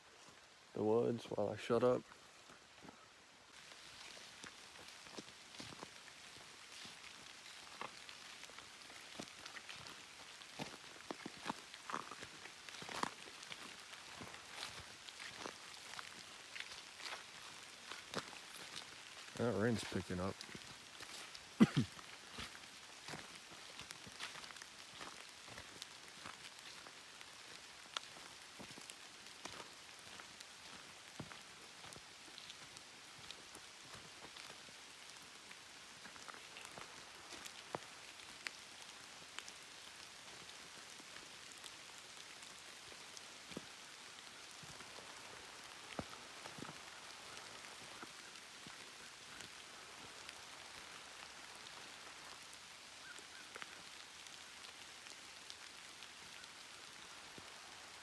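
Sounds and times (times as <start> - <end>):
steady rain hiss: 0.0 - 58.0.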